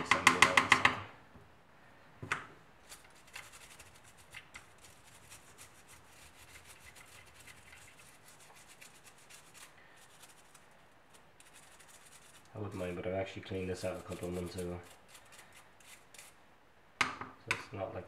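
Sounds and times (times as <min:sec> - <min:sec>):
brush scrubbing: 0:02.8 - 0:16.4.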